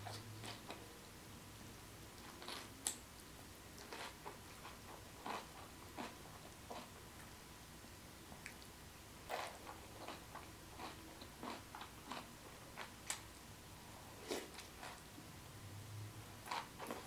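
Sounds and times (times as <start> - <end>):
mouth chewing food: 2.2 - 7.4, 9.3 - 13.3.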